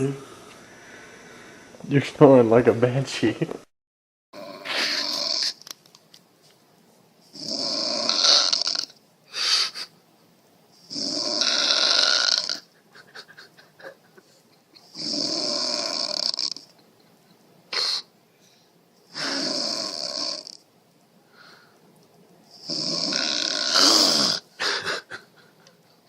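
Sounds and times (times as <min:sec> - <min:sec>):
person snoring loudly: 0:04.4 - 0:05.6, 0:07.3 - 0:09.0, 0:10.8 - 0:12.7, 0:14.9 - 0:16.7, 0:19.1 - 0:20.6, 0:22.5 - 0:24.5
short snort: 0:04.4 - 0:05.6, 0:22.6 - 0:24.4.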